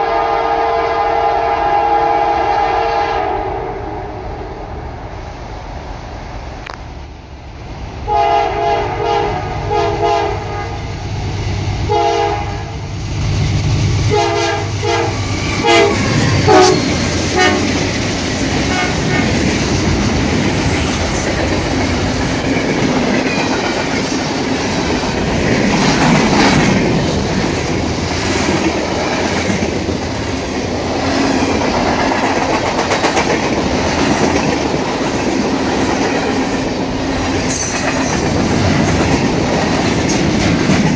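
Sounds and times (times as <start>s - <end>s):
locomotive air horn blasts: 0.0s - 4.2s, 8.1s - 10.9s, 11.9s - 12.8s, 14.1s - 17.8s, 18.7s - 19.4s
train wheels clattering over rails: 12.5s - 40.9s.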